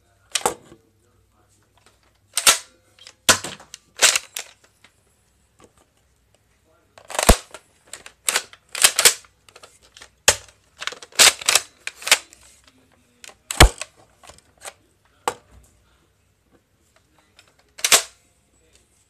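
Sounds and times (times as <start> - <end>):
plastic toy blaster clacking: 3.4 - 4.5, 7.1 - 7.6, 8.2 - 12.2.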